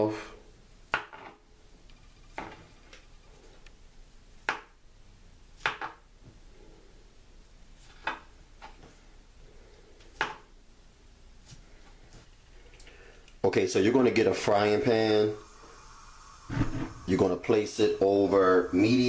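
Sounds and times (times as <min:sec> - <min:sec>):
kitchen knocks and scrapes: 0:02.0 - 0:03.2, 0:16.5 - 0:17.0.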